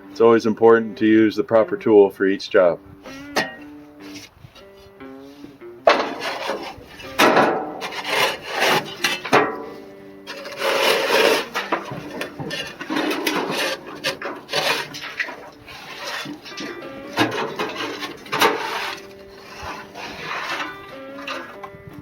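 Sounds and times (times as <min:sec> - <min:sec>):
tool scraping metal grill: 0:03.1 - 0:04.3, 0:05.9 - 0:21.7
squeaking scrapes: 0:03.1 - 0:21.7.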